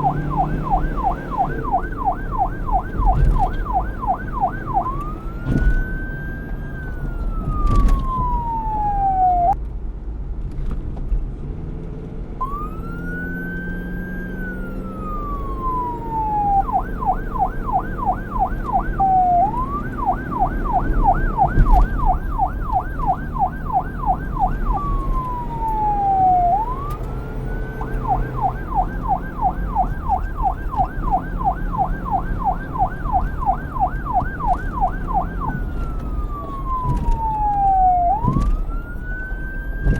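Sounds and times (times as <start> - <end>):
police siren wail and yelp: 0.0 - 9.6, 12.4 - 39.9.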